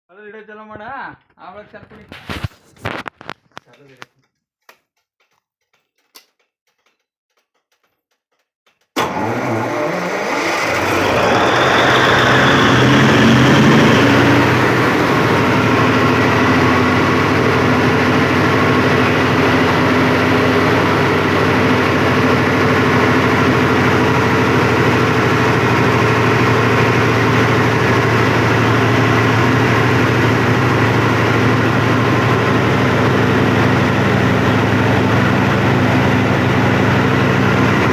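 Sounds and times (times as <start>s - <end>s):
diesel generator running: 9.0s - 37.9s.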